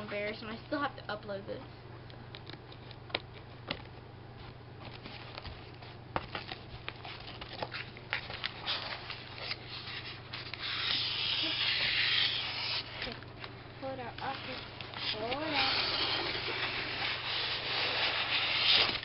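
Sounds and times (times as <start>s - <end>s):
rustling scrape of packaging: 14.2s - 19.0s.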